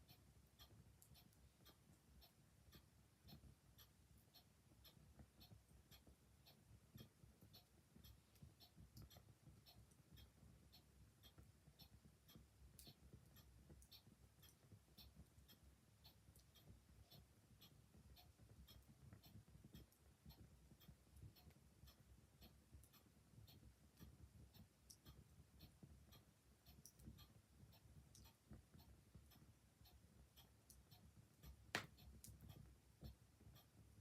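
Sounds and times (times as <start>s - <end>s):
clock ticking: 0.0s - 34.0s.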